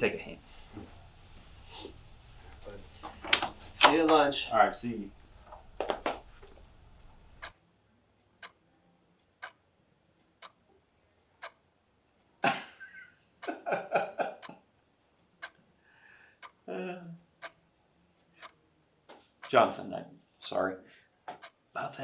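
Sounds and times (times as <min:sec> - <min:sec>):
clock ticking: 0:02.6 - 0:07.6, 0:08.2 - 0:08.6, 0:09.2 - 0:09.6, 0:10.2 - 0:15.6, 0:16.4 - 0:16.6, 0:17.2 - 0:17.6, 0:18.2 - 0:18.6, 0:19.2 - 0:20.6, 0:21.3 - 0:22.0.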